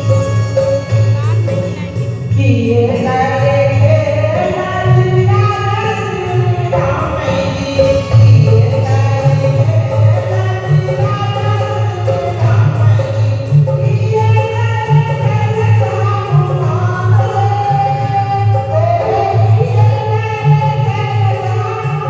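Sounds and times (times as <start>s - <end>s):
person singing devotional song: 0.0s - 22.0s.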